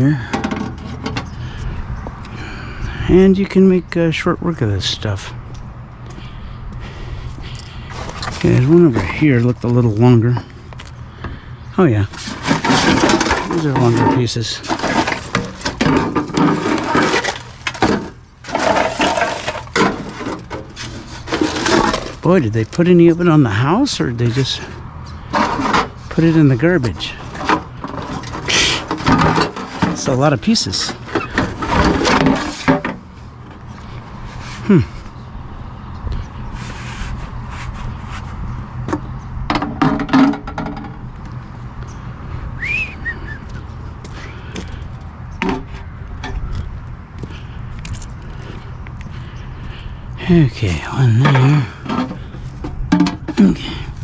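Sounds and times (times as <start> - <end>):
scrap aluminum rattling and clattering: 0.0 - 1.5, 7.5 - 10.5, 11.8 - 34.7, 49.2 - 54.0.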